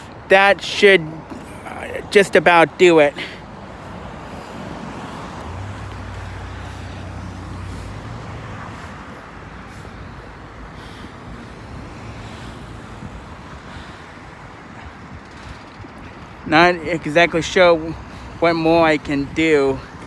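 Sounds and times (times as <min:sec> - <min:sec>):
vehicle engine passing: 0:01.7 - 0:14.2.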